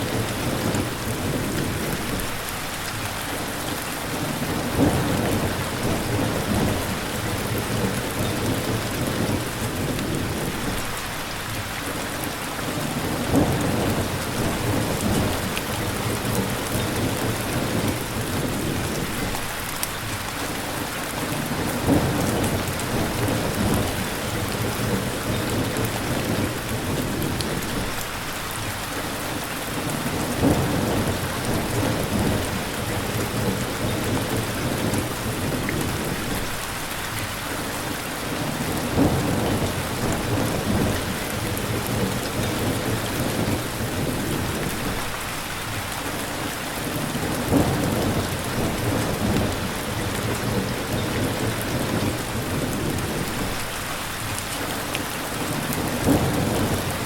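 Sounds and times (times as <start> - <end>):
rumbles of thunder: 0.0 - 3.5, 4.1 - 12.0, 12.7 - 20.1, 20.8 - 54.4, 55.4 - 57.0
heavy rain hissing: 0.0 - 57.0.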